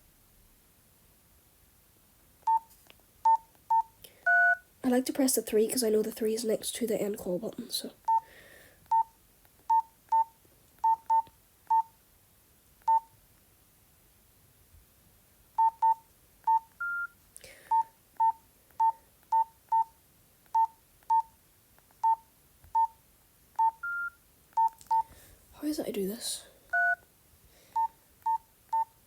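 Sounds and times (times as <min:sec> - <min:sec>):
phone keypad beeps: 0:02.5 - 0:04.6, 0:08.0 - 0:08.2, 0:08.9 - 0:09.1, 0:09.7 - 0:11.9, 0:12.9 - 0:13.1, 0:15.6 - 0:19.9, 0:20.5 - 0:21.4, 0:22.0 - 0:22.2, 0:22.8 - 0:23.0, 0:23.6 - 0:25.1, 0:26.7 - 0:27.0, 0:27.8 - 0:29.0.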